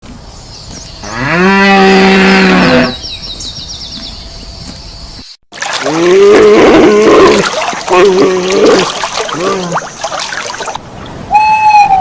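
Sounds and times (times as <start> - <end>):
cow mooing: 1.0 - 3.0.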